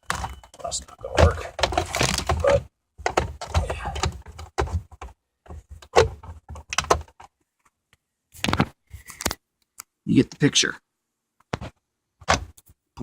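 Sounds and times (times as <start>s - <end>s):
knocks clicks and rattles of car parts: 0.0s - 7.4s, 11.5s - 12.6s.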